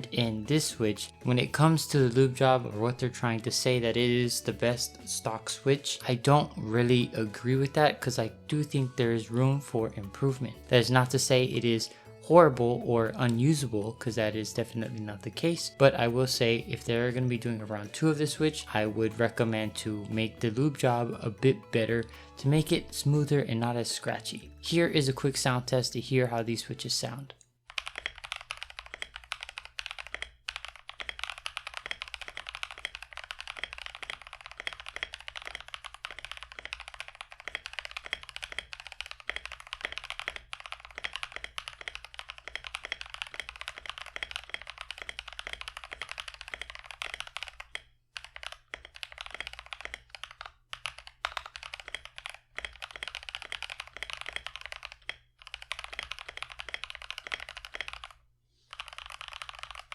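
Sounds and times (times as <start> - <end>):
mechanical keyboard typing: 27.7 - 59.9.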